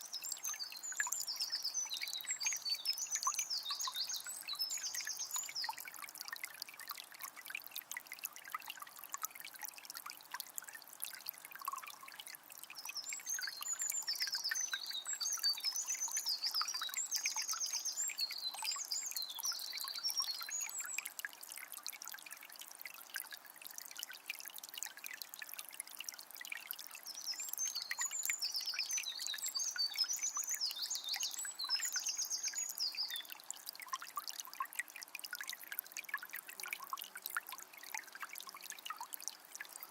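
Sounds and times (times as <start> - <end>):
songbird singing: 0.0 - 5.9, 12.8 - 21.1, 27.1 - 33.4
spring water trickling: 0.0 - 39.9.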